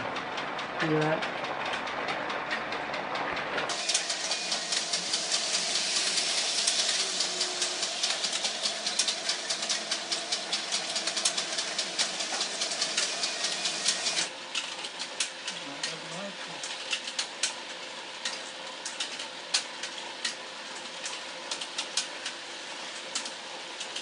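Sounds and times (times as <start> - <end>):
faint motor hum: 0.0 - 24.0
model train wheels clattering: 3.6 - 16.0.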